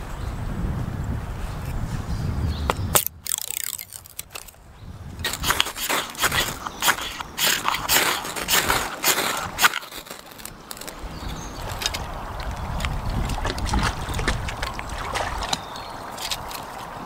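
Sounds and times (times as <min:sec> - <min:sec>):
stream water trickling: 0:02.9 - 0:17.0
light clicks and crunches: 0:03.0 - 0:04.6, 0:05.2 - 0:16.9.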